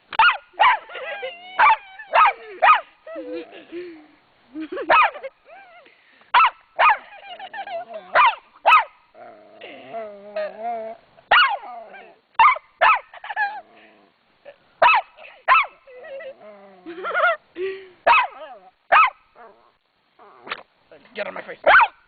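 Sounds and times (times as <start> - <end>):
small dog barking: 0.2 - 2.9, 4.8 - 5.3, 6.3 - 9.0, 11.3 - 13.6, 14.8 - 15.8, 18.1 - 19.2, 21.6 - 22.0
dog growling: 9.2 - 11.0, 11.6 - 12.2, 13.3 - 14.2, 15.9 - 17.4, 19.4 - 20.6.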